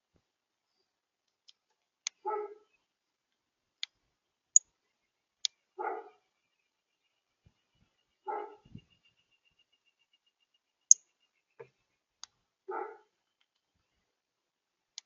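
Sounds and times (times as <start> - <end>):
dog barking: 2.2 - 2.7, 5.8 - 6.2, 8.3 - 8.8, 12.7 - 13.2.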